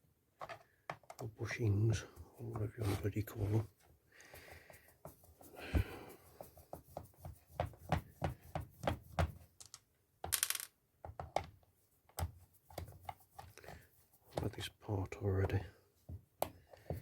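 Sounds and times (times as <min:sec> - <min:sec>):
small metal parts clinking: 0:09.6 - 0:10.7.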